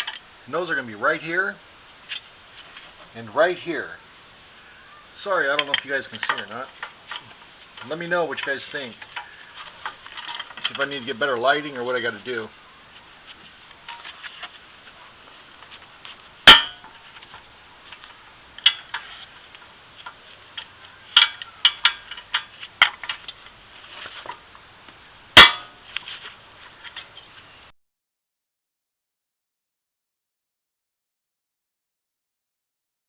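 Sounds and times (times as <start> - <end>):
sharp metallic knocks: 16.4 - 17.0, 25.4 - 25.8.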